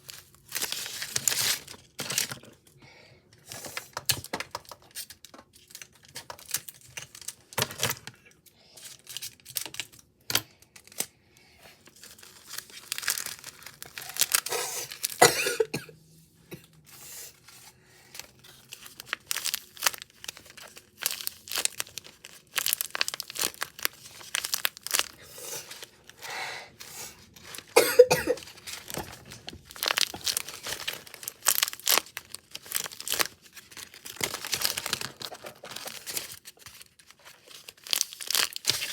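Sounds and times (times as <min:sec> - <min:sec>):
person coughing: 0:14.5 - 0:16.7, 0:27.8 - 0:28.4.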